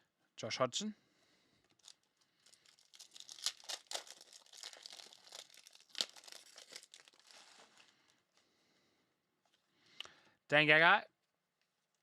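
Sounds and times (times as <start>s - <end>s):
foil wrapper and cards crinkling: 1.6s - 8.2s.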